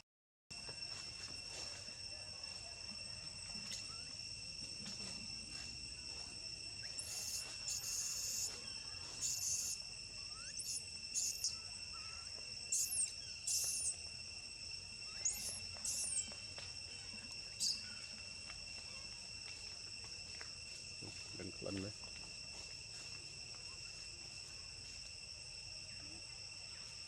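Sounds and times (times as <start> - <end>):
insect drone: 0.5 - 27.0
very high chirps or squeaks: 6.8 - 14.0, 15.0 - 16.4, 17.6 - 18.0.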